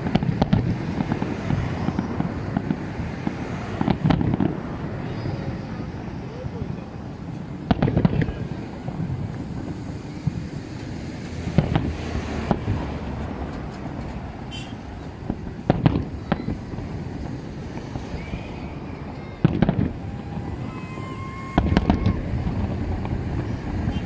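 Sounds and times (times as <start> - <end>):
fireworks bangs: 0.0 - 24.0.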